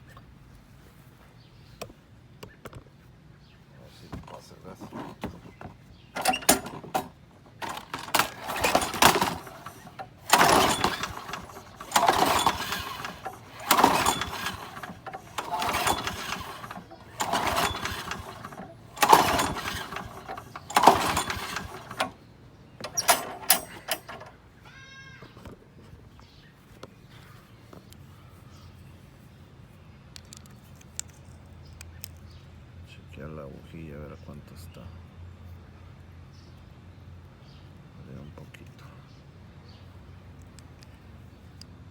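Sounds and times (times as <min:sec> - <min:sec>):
lawnmower recoil starter pulls: 0:04.2 - 0:24.5
engine turning over: 0:04.3 - 0:22.2, 0:22.8 - 0:24.4.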